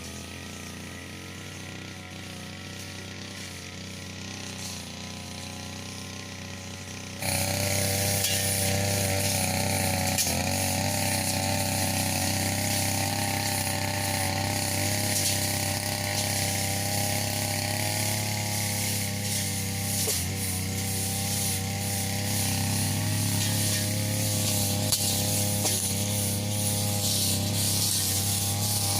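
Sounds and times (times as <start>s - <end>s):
brush cutter engine running: 0.0s - 28.9s
broad hissing noise: 7.2s - 17.5s, 18.1s - 28.9s.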